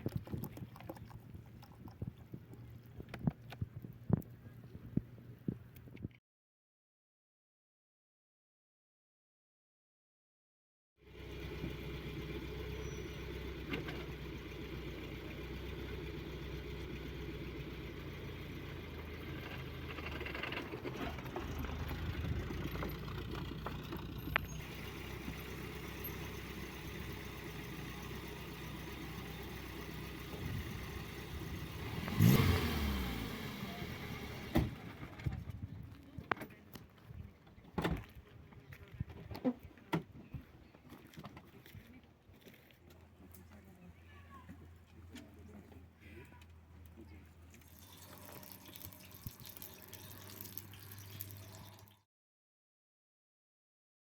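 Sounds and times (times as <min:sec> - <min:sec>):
vehicle engine droning: 0:11.0 - 0:38.2.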